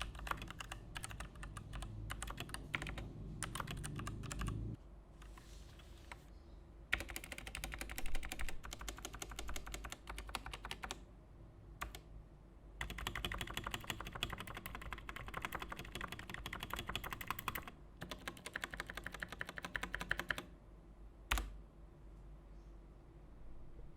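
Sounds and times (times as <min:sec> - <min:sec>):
mechanical keyboard typing: 0:00.0 - 0:04.7, 0:06.9 - 0:11.0, 0:11.8 - 0:12.1, 0:12.8 - 0:20.5, 0:21.3 - 0:21.5.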